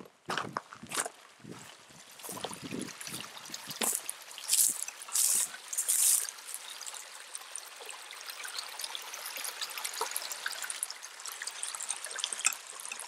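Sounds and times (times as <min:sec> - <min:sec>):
water trickling through drain: 0:01.3 - 0:13.0.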